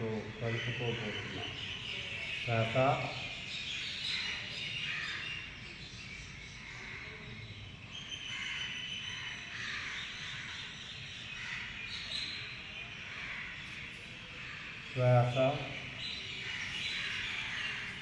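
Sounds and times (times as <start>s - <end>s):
birds chirping: 0.0s - 18.0s
whistled bird notes: 13.7s - 18.0s.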